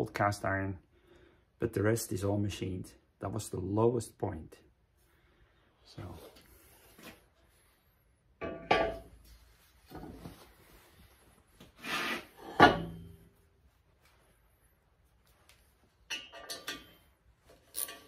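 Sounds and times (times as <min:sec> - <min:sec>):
metal clunk with ring: 0:08.4 - 0:09.1
soft rubbing: 0:09.2 - 0:12.4, 0:13.4 - 0:16.0.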